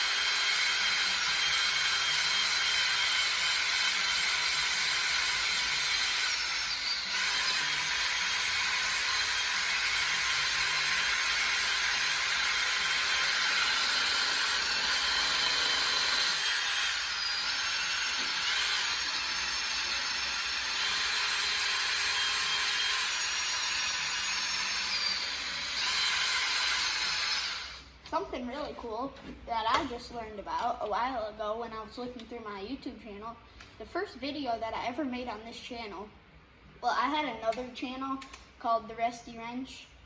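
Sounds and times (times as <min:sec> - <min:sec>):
power drill scrubbing steel: 0:00.0 - 0:27.8.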